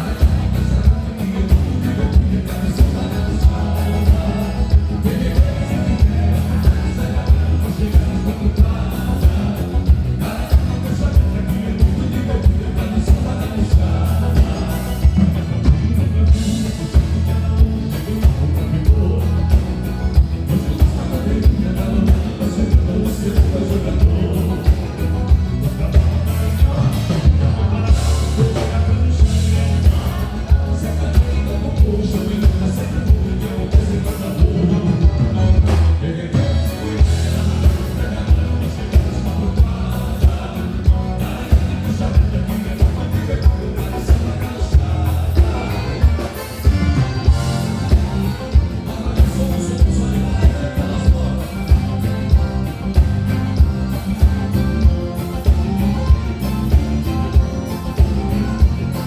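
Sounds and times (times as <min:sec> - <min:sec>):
bass line: 0:00.0 - 0:59.0
live band playing dance music: 0:00.0 - 0:59.0
steady drum beat: 0:00.0 - 0:59.0.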